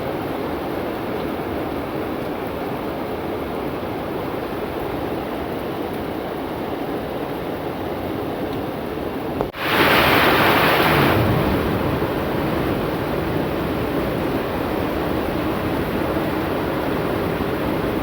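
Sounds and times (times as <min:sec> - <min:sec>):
heavy rain: 0:00.0 - 0:18.0.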